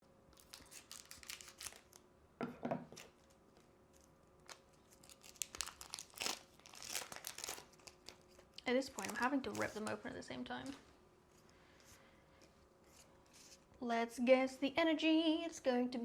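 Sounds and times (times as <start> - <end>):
foil pack tearing and crinkling: 0.4 - 2.0, 4.0 - 10.0.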